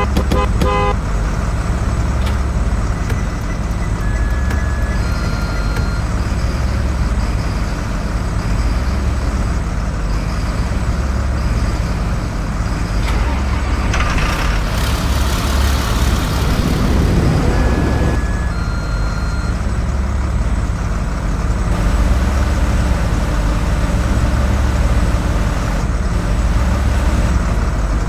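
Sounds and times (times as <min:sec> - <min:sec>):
bus engine rumbling: 0:14.0 - 0:18.2, 0:21.7 - 0:28.0
short faint beeps: 0:21.7 - 0:27.7.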